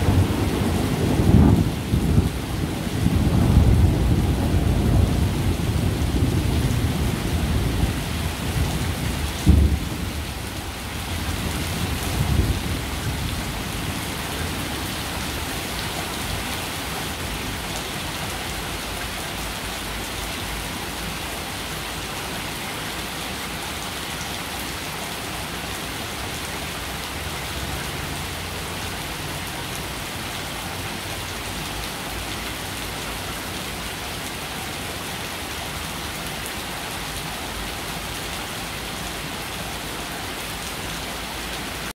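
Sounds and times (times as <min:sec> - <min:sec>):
thunder claps: 0:00.0 - 0:02.4, 0:09.4 - 0:10.2
thunder rumbling: 0:00.0 - 0:16.5
heavy rain falling: 0:00.0 - 0:41.9.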